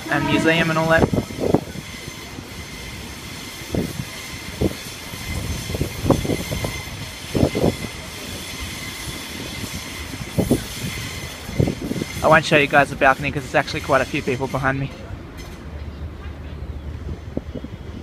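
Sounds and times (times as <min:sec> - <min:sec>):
faint high steady tones: 0:00.0 - 0:01.2
electric train rumble: 0:00.0 - 0:16.3.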